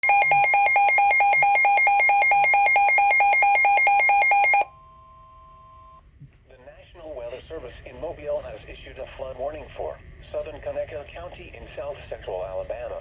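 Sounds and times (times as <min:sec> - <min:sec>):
rapid electronic alarm beeping: 0:00.0 - 0:04.7.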